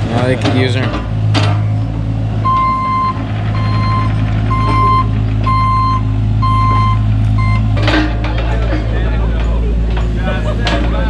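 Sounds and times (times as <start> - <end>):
engine running: 0.0 - 11.0
backup alarm beeping: 2.4 - 7.8.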